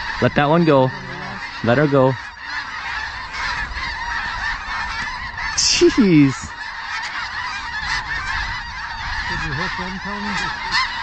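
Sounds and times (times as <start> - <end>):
flock of geese honking: 0.0 - 11.0.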